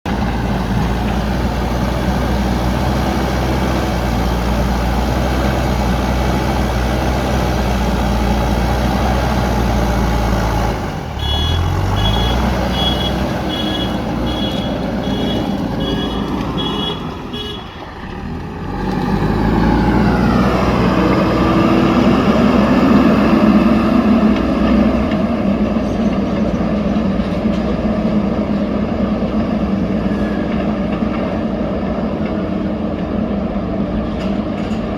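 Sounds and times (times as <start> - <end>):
diesel engine running: 0.0 - 34.9
reversing alarm beeping: 11.2 - 17.1.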